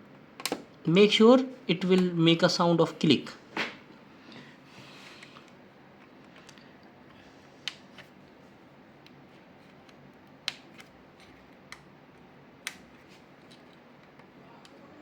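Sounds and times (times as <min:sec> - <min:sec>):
connectors clicking into sockets: 0:00.4 - 0:00.6.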